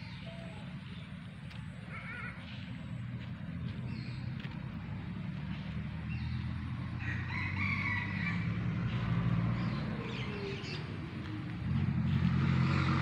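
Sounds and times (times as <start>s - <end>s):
rooster crowing: 7.0s - 8.8s.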